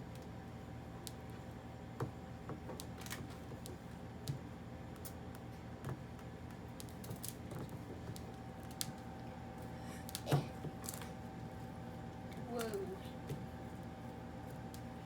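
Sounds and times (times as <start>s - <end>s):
faint steady hum: 0.0s - 15.0s
hands clicking and tapping dough: 1.9s - 9.2s.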